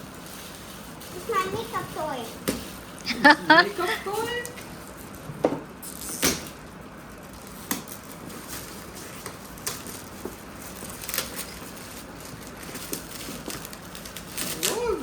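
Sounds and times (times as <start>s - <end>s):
plastic packaging rustling: 0.0s - 5.3s, 7.0s - 15.0s.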